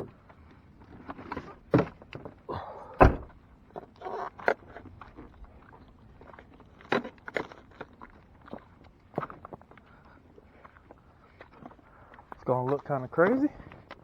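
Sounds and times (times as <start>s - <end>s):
sharp thump: 3.0s - 3.3s.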